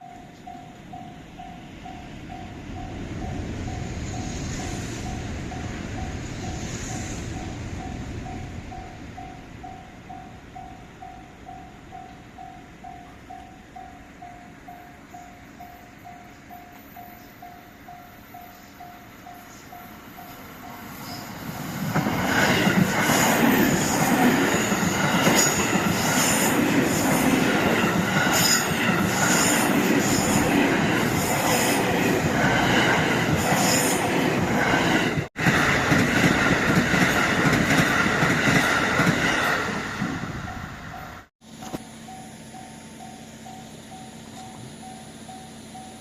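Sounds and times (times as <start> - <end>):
crossing warning bell beeping: 0.0 - 35.2, 36.6 - 46.0
train whine: 0.0 - 46.0
train wheels clattering: 20.6 - 40.3.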